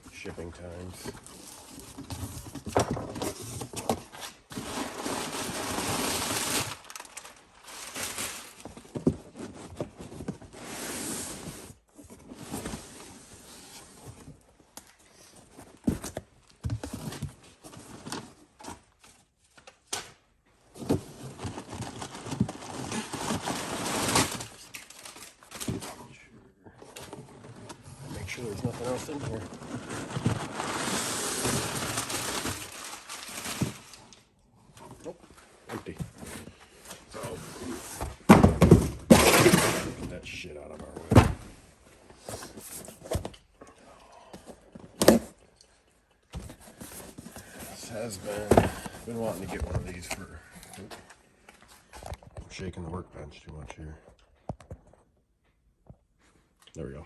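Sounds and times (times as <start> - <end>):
packing material crinkling: 4.5 - 8.7, 28.8 - 34.2.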